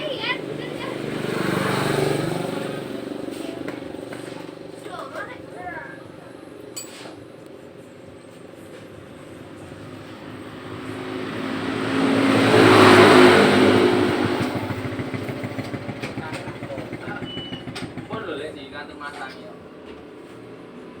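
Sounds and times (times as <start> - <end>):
vehicle passing by: 0.0 - 5.2, 8.4 - 19.0.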